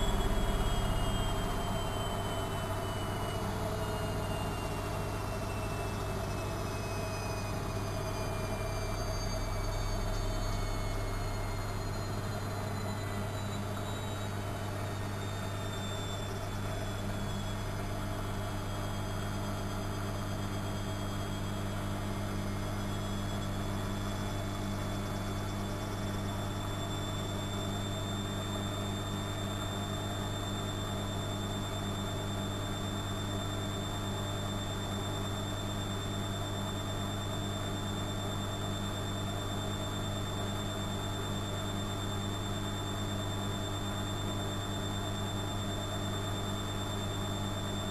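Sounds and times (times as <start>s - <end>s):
washing machine running: 0.0s - 8.0s.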